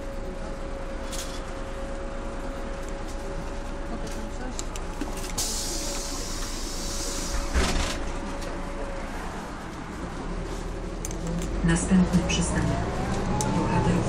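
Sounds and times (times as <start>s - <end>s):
diesel bus engine running: 0.0s - 14.0s
compressed air hissing: 5.4s - 7.5s.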